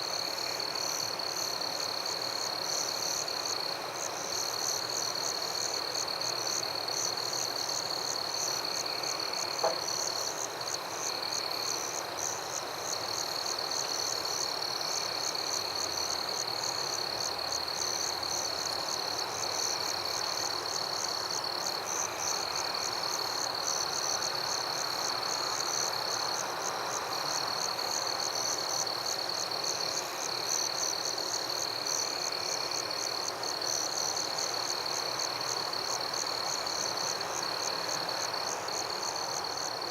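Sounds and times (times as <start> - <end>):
pulsing cricket chirps: 0.0 - 39.9
frog chorus: 8.4 - 10.3.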